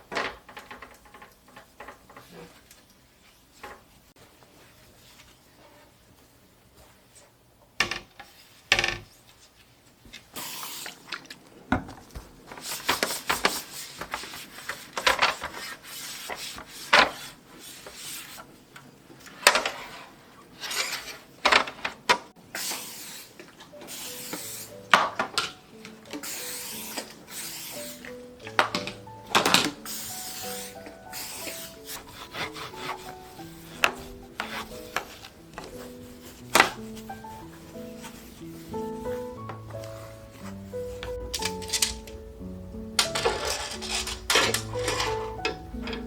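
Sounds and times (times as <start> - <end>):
rubbing and scrubbing: 12.2 - 18.7, 22.4 - 46.0
soft background music: 22.4 - 46.0
dishes and containers clattering: 27.9 - 42.4, 43.0 - 46.0.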